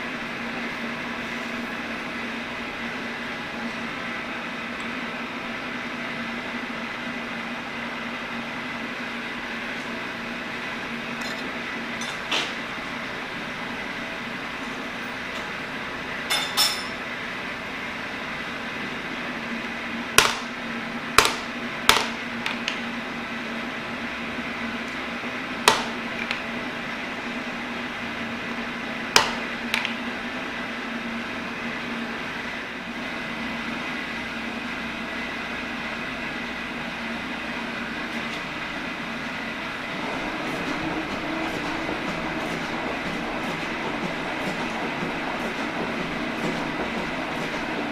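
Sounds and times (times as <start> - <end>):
low machine hum: 0.0 - 47.9
shop background noise: 11.1 - 12.8, 14.5 - 17.1.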